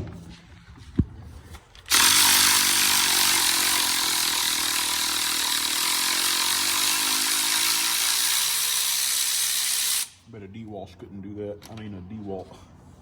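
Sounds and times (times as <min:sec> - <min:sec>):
power tool hiss and motor whine: 0:01.9 - 0:10.2.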